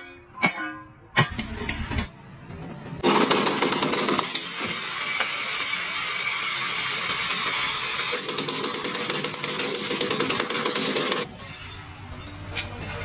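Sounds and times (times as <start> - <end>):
power tool grinding with high whine: 4.2 - 11.3.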